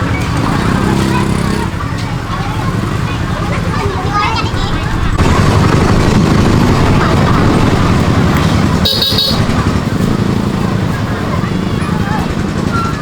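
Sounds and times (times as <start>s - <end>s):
traffic noise: 0.0s - 13.0s
short high-pitched horn toot: 8.8s - 9.5s.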